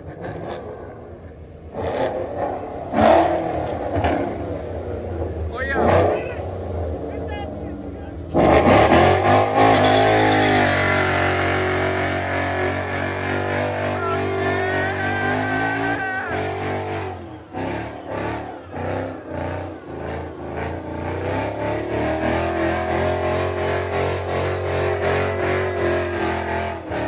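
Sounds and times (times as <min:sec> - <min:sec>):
car engine revving: 0:00.0 - 0:27.0.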